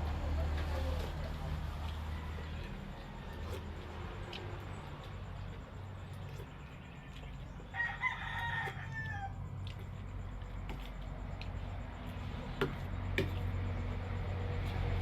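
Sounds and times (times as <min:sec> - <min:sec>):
rooster crowing: 0:01.4 - 0:04.4, 0:07.7 - 0:09.5.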